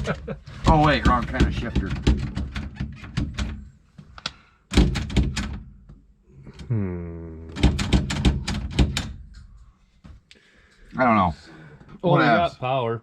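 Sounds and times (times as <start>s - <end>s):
knocks and thunks: 0.6s - 3.7s, 4.7s - 6.0s, 7.5s - 9.3s.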